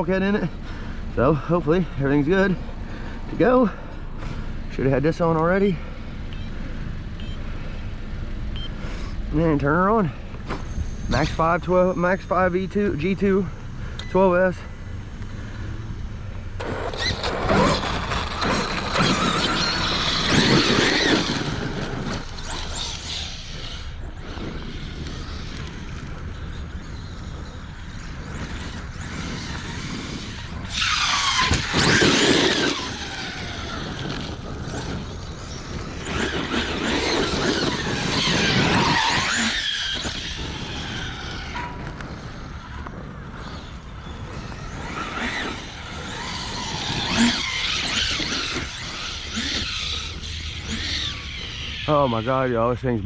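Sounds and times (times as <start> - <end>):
electric motor whining: 10.3 - 52.7.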